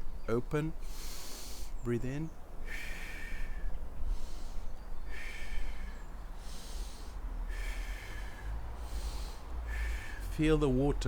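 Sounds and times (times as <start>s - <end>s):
man breathing through nose: 0.8s - 1.8s, 2.6s - 10.3s.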